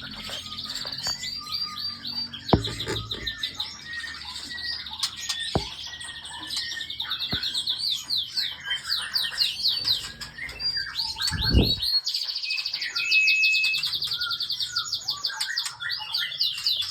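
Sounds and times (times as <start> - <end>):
songbirds chirping and trilling: 0.0 - 16.9
low thump: 2.6 - 3.4, 11.3 - 11.9.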